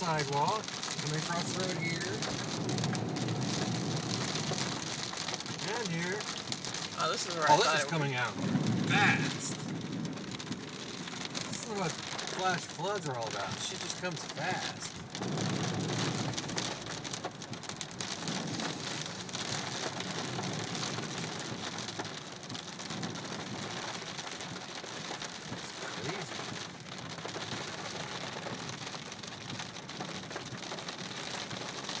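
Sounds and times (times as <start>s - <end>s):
heavy rain: 0.0s - 32.0s
flood water rushing: 5.5s - 9.7s, 11.2s - 14.9s.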